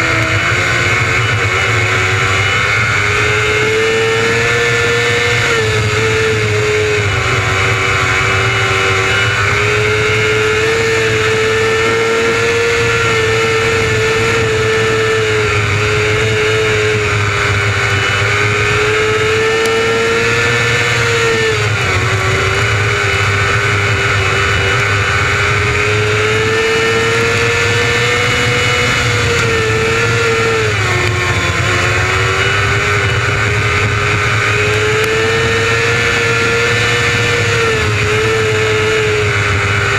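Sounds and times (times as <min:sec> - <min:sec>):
motorcycle engine running high: 0:00.0 - 0:39.9.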